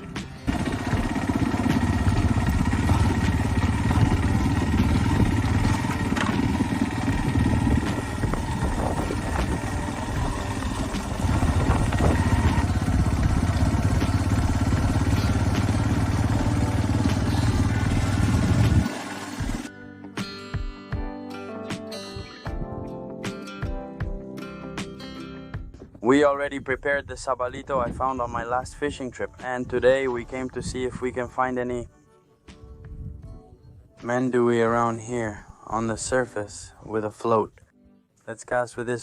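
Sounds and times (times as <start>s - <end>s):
engine low rumble: 0.4s - 19.7s.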